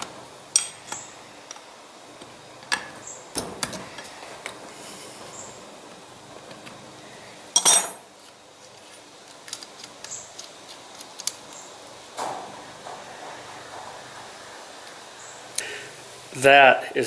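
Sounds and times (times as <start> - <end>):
light clicks and taps of tools: 8.2 - 11.6.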